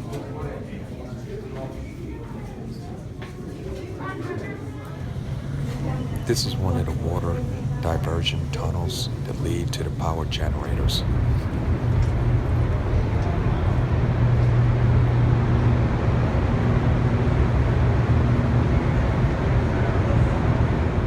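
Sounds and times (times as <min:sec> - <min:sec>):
higher hum: 0:05.0 - 0:18.9
low rumble with hum: 0:05.0 - 0:21.0.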